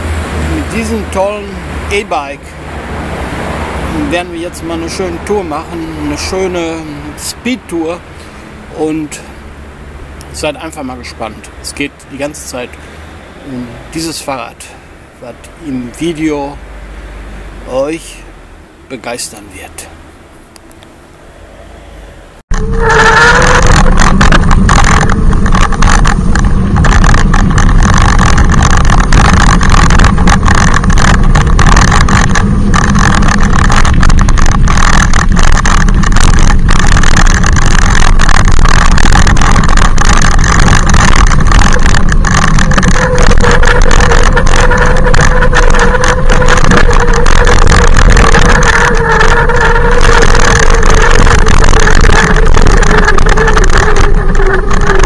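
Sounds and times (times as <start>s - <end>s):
heavy low rumble: 0.0s - 20.4s, 21.1s - 55.0s
electric bike motor whining: 22.5s - 55.0s.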